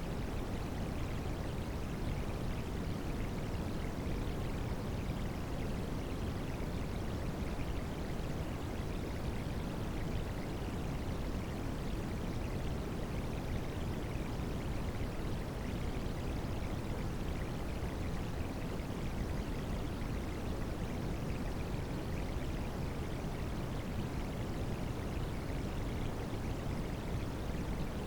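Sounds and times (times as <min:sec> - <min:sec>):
white noise hiss: 0:00.0 - 0:06.4.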